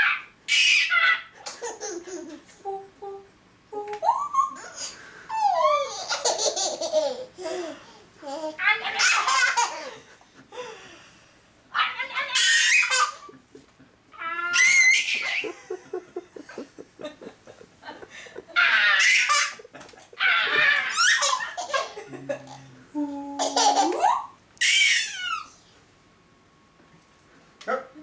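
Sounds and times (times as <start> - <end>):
baby laughing: 0.0 - 2.4, 4.0 - 10.0, 12.2 - 13.4, 14.3 - 16.0, 18.4 - 22.6, 23.4 - 25.5
adult laughing: 13.1 - 14.0, 15.2 - 22.7
adult making silly vocal sounds: 22.1 - 23.7.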